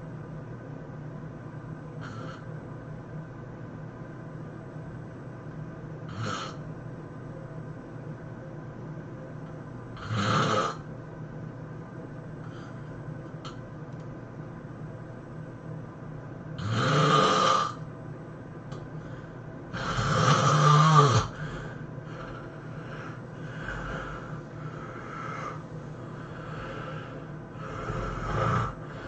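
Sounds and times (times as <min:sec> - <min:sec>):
person snoring heavily: 0:02.0 - 0:02.5, 0:06.1 - 0:06.6, 0:10.0 - 0:10.8, 0:16.6 - 0:17.8, 0:19.7 - 0:29.0
faint breathing: 0:12.4 - 0:13.0, 0:18.9 - 0:20.2, 0:21.2 - 0:29.0.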